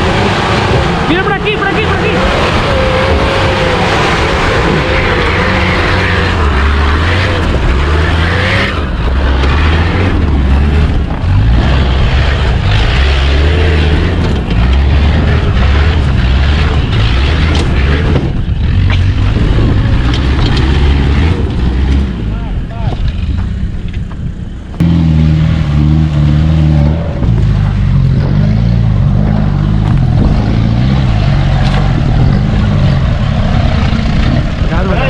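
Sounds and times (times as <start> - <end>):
off-road vehicle engine: 0.0 - 35.0.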